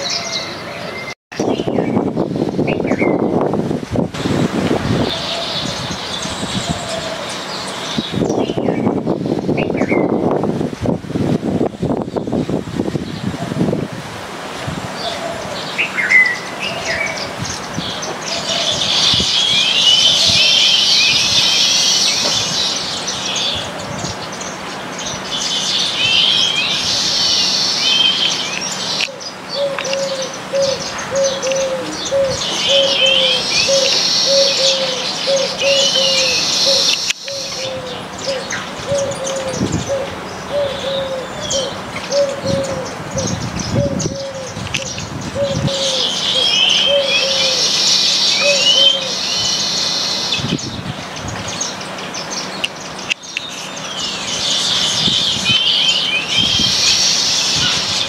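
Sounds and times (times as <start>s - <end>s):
weaver birds chattering: 14.9s - 58.0s.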